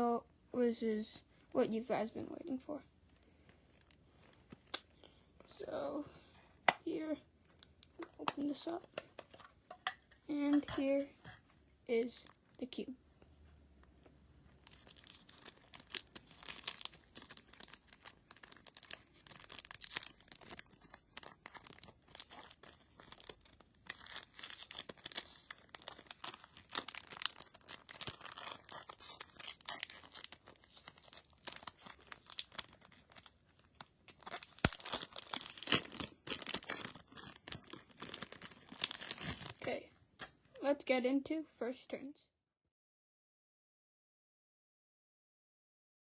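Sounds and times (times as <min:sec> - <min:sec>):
plastic wrapping crinkling and tearing: 0:03.7 - 0:05.6, 0:14.5 - 0:39.8.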